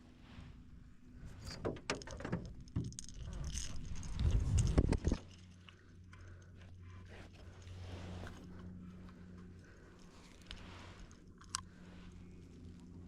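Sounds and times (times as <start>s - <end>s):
steady low hum: 0.0s - 1.7s, 2.4s - 13.0s
fishing gear rattling: 1.8s - 8.5s.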